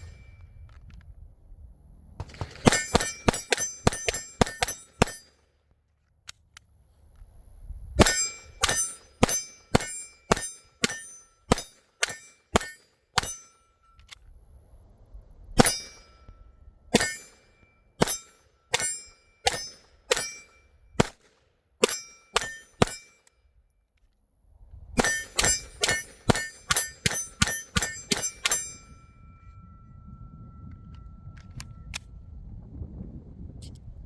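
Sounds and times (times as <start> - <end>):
steel target plate ringing: 0.0 - 0.6, 2.6 - 5.4, 8.0 - 14.1, 15.6 - 20.9, 21.8 - 23.3, 25.0 - 31.9
pistol shots: 2.2 - 5.3, 8.0 - 13.4, 21.0 - 23.1, 25.0 - 28.6.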